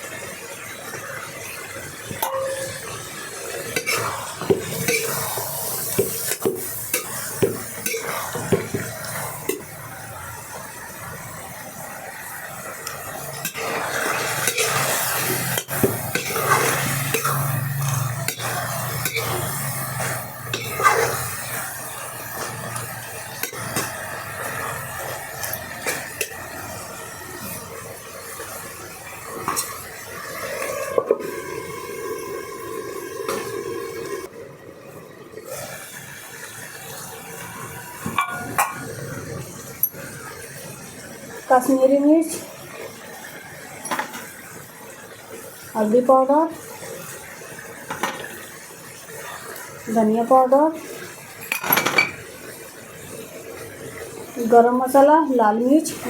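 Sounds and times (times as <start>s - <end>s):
food sizzling: 0.0s - 56.0s
metal spoon scraping a pot: 3.7s - 9.7s, 13.4s - 21.6s.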